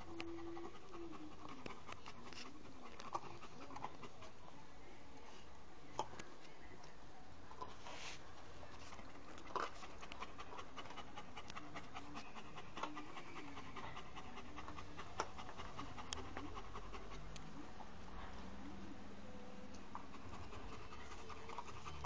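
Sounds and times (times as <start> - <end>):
dog panting: 0.0 - 4.4, 8.9 - 17.4, 19.9 - 22.0.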